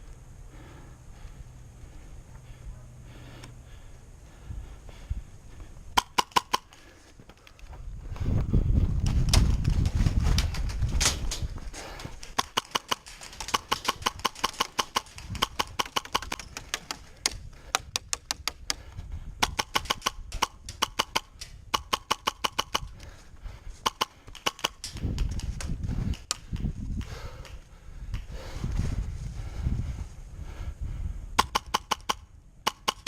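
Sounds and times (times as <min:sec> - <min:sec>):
airsoft guns firing bursts: 0:06.0 - 0:06.8, 0:12.3 - 0:17.4, 0:19.4 - 0:23.0, 0:23.8 - 0:25.6, 0:31.4 - 0:33.0.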